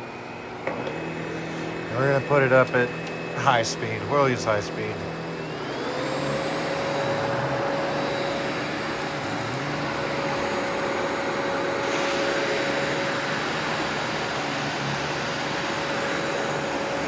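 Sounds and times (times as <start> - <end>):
vacuum cleaner running: 0.0 - 17.0.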